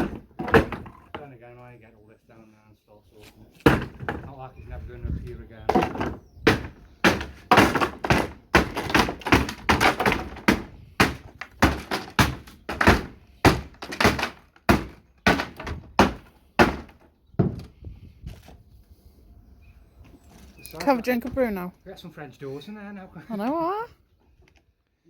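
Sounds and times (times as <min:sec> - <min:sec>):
wooden thunks and knocks: 0:00.0 - 0:01.4, 0:03.6 - 0:04.5, 0:05.6 - 0:17.8.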